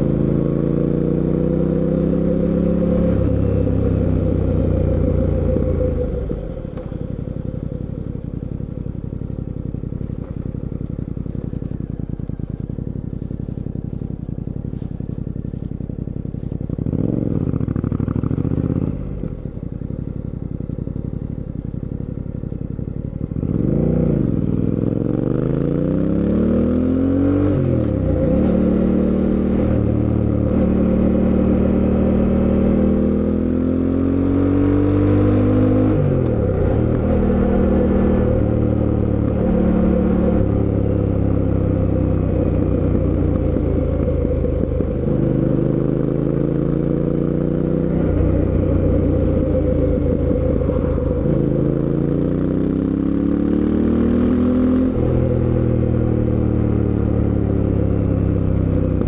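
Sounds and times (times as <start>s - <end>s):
motorcycle engine accelerating: 0.0s - 59.0s.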